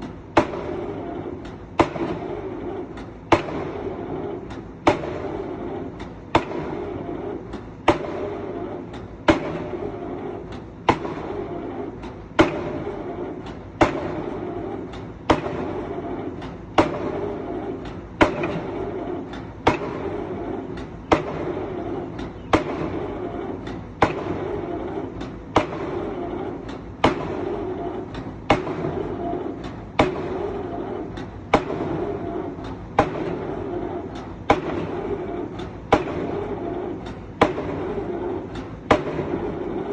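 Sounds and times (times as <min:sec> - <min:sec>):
excavator engine running: 0:08.4 - 0:37.3.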